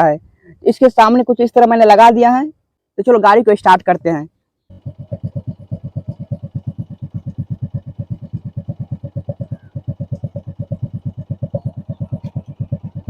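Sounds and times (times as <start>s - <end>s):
motorcycle idling: 4.7s - 13.0s.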